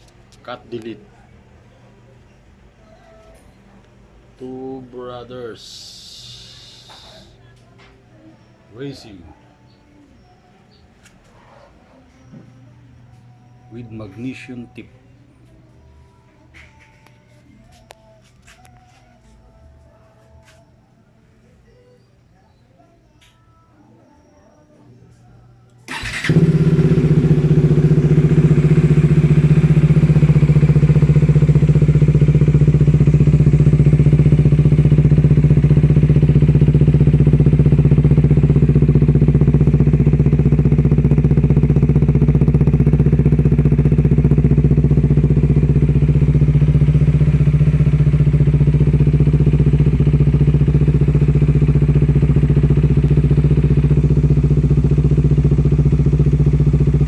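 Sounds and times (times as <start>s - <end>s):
motorcycle engine idling: 25.9s - 57.0s.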